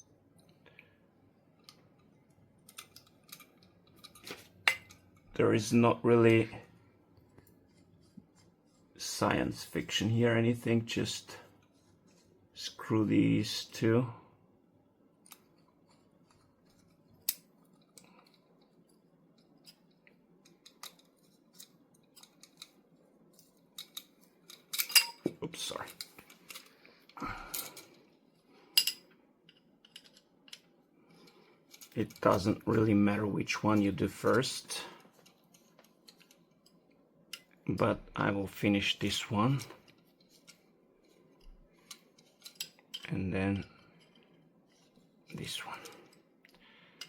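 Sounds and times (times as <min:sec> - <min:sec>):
faint clicks of steel parts: 0:00.3 - 0:05.4, 0:15.2 - 0:38.2, 0:39.0 - 0:47.0.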